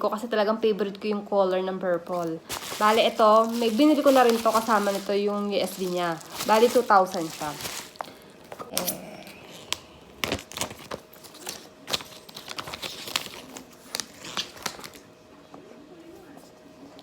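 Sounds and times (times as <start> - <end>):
plastic packaging crinkling: 2.1 - 15.0.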